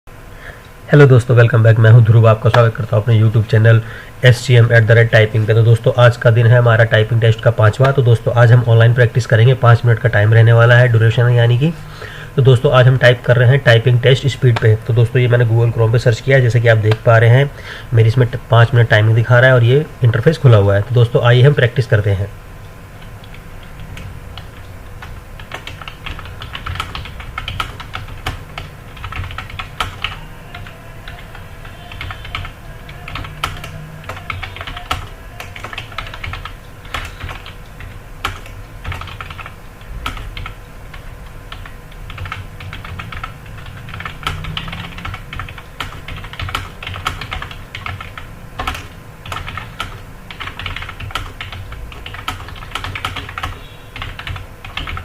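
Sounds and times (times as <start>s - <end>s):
typing on computer keyboard: 23.0s - 55.0s.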